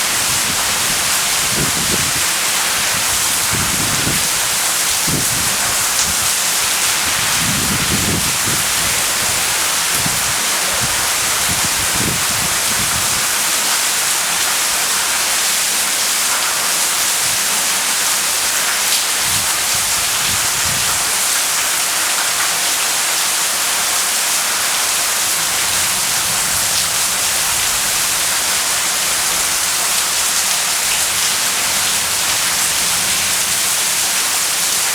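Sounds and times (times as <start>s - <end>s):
heavy rain hissing: 0.0s - 34.9s.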